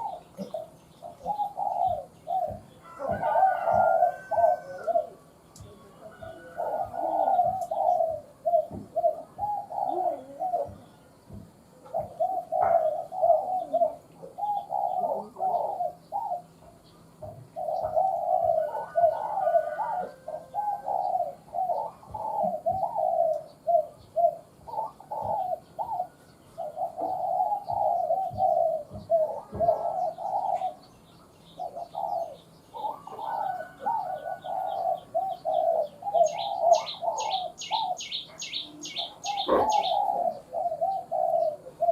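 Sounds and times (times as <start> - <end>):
dove cooing: 0.0 - 41.9
small bird high chirps: 36.2 - 40.1.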